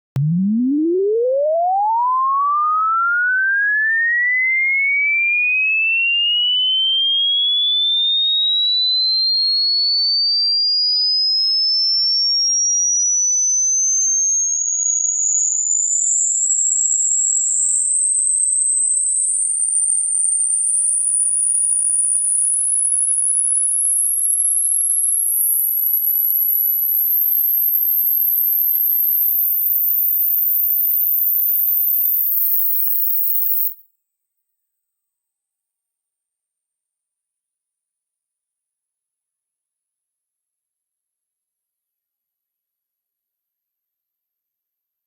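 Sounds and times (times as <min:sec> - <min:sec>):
rising pure test tone: 0:00.2 - 0:03.7, 0:26.7 - 0:33.8.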